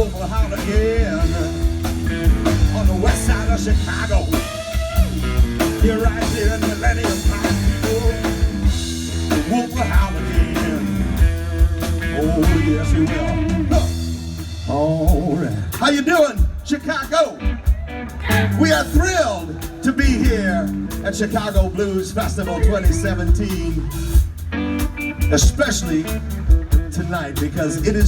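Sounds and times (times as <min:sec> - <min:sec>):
bass guitar: 0:00.0 - 0:28.0
drum kit: 0:00.0 - 0:28.0
electric blues band playing: 0:00.0 - 0:28.0
lead guitar bending notes: 0:22.2 - 0:27.4.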